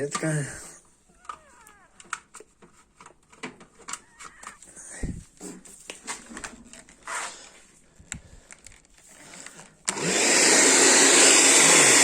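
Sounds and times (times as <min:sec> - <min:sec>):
hair dryer blowing air: 0:09.9 - 0:12.0.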